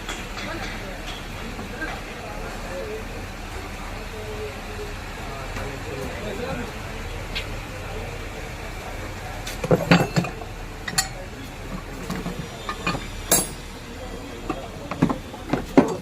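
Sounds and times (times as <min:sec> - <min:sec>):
metal tools clinking: 0:09.6 - 0:11.2, 0:12.0 - 0:13.7.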